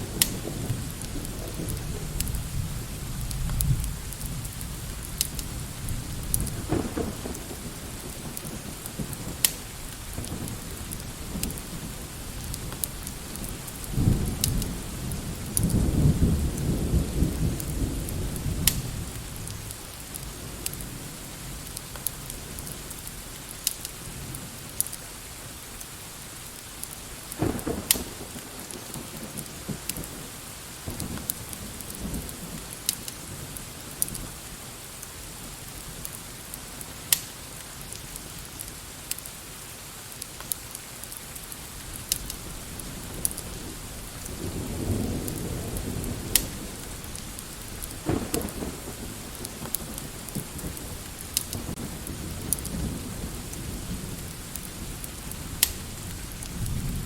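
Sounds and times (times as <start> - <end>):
thunder rolling: 0.0 - 21.6, 27.3 - 33.6, 41.8 - 57.0
steady rain: 0.0 - 57.0.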